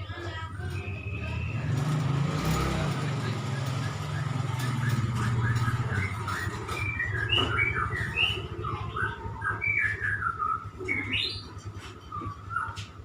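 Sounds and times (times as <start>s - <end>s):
songbird singing whistled notes: 0.5s - 13.0s.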